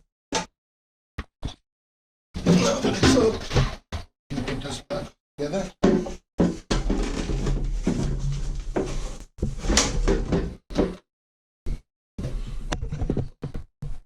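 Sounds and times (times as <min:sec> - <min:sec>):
toilet parts clunking and scraping: 0:02.4 - 0:04.8, 0:05.8 - 0:11.0.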